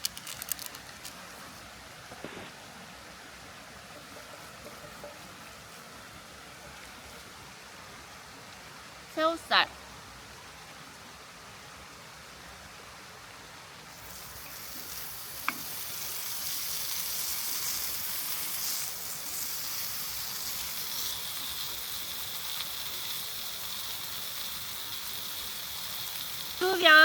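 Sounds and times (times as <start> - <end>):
shrimp sizzling in a hot pan: 13.9 - 27.0.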